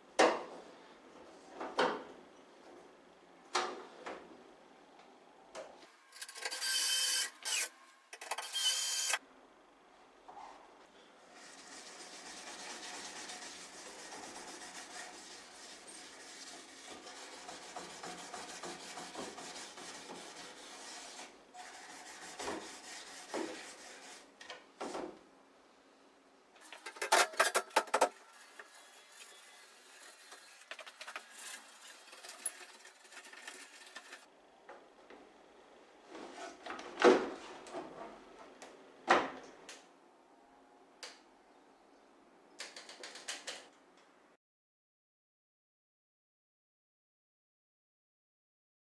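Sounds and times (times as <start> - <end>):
steady rubbing on metal: 11.5 - 24.3, 26.6 - 34.3.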